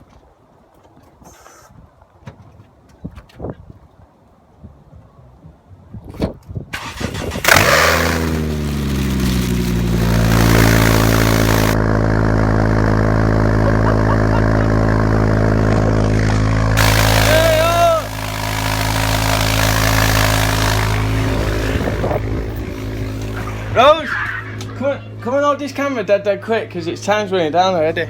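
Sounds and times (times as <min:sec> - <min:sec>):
car engine starting and idling: 0:06.8 - 0:28.0.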